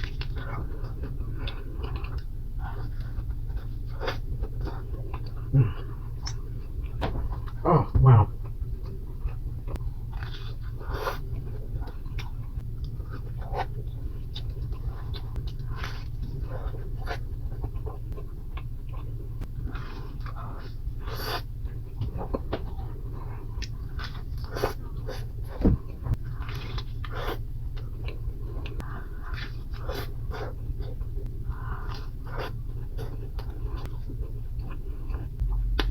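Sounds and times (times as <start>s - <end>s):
chewing and mouth sounds: 0.0s - 35.9s
steady low hum: 0.0s - 35.9s
loud thump: 25.6s - 26.2s.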